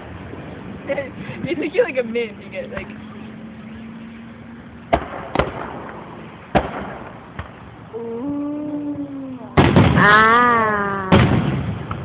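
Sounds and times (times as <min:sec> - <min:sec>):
fireworks exploding: 0:04.9 - 0:07.8, 0:08.9 - 0:10.2, 0:11.0 - 0:12.0
person saying ooh: 0:07.9 - 0:11.2.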